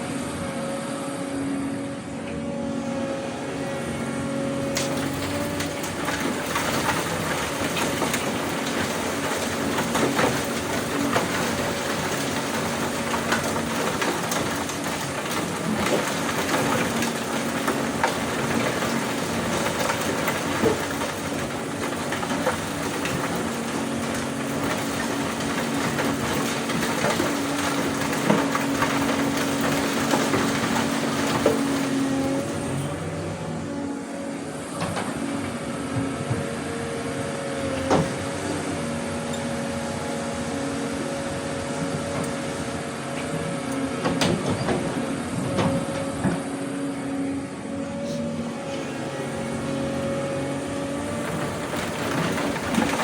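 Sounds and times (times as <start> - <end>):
excavator diesel engine: 0.0 - 53.0
rock and dirt crunching: 4.6 - 36.7, 48.0 - 53.0.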